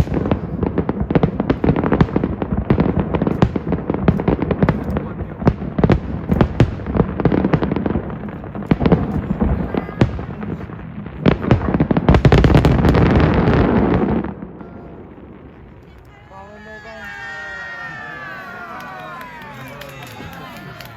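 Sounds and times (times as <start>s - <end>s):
fireworks bangs and crackling: 0.0s - 20.9s.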